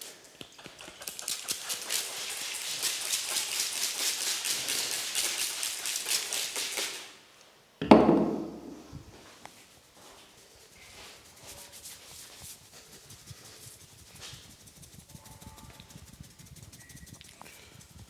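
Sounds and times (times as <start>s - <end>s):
hands rubbing scalp: 0.4s - 7.0s, 8.6s - 18.0s
loud dull thump: 7.8s - 8.9s.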